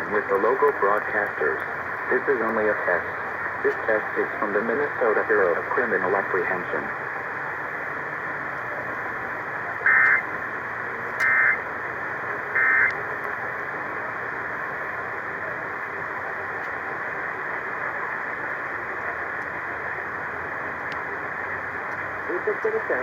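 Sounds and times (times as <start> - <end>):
radio static hiss: 0.0 - 23.0
two-tone warbling data tones: 9.8 - 10.3, 11.2 - 11.6, 12.6 - 12.9.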